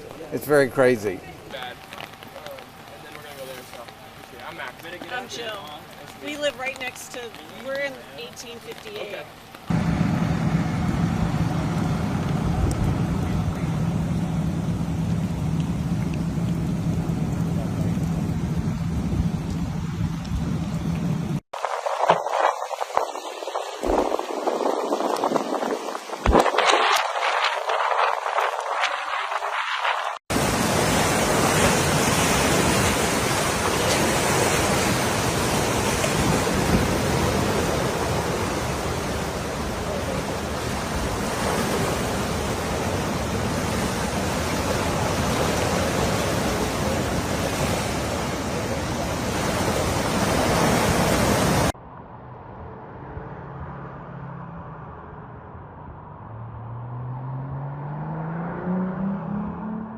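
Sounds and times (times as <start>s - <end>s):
storm roaring: 8.2s - 56.8s
vehicle engine rising in pitch: 51.8s - 59.9s.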